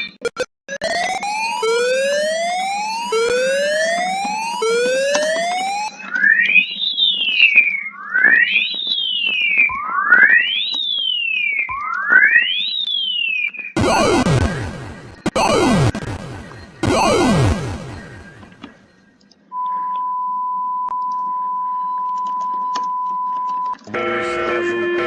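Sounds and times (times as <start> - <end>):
electronic alarm tone sweeps: 0.0 - 5.9, 13.8 - 18.6.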